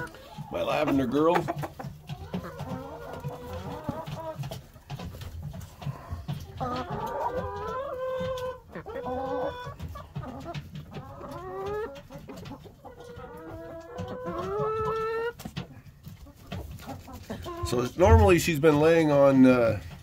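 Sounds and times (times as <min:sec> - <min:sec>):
hens clucking: 0:00.0 - 0:20.0
rustling and knocking: 0:01.4 - 0:08.4.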